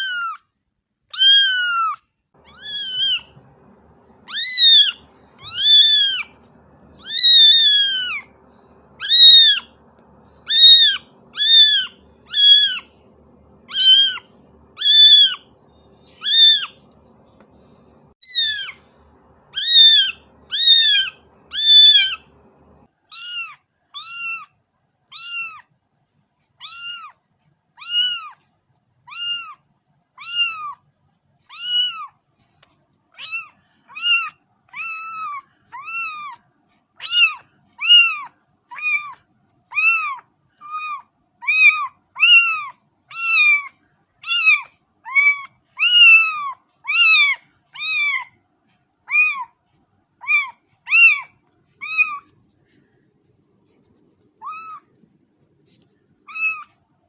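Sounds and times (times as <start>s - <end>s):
cat meowing: 0.0s - 0.4s, 1.1s - 17.0s, 17.8s - 24.5s, 25.1s - 25.6s, 26.6s - 27.2s, 27.8s - 28.4s, 29.1s - 29.6s, 30.2s - 30.8s, 31.5s - 32.1s, 33.2s - 36.4s, 37.0s - 48.3s, 49.1s - 49.5s, 50.2s - 52.4s, 54.4s - 54.9s, 56.3s - 56.8s.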